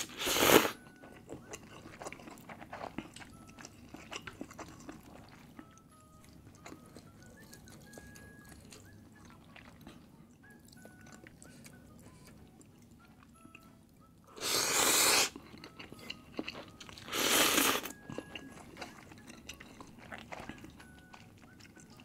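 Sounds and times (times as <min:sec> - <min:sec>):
loud noodle slurps: 0:00.0 - 0:00.8, 0:14.4 - 0:15.4, 0:17.1 - 0:17.9
quiet chewing: 0:00.7 - 0:22.0.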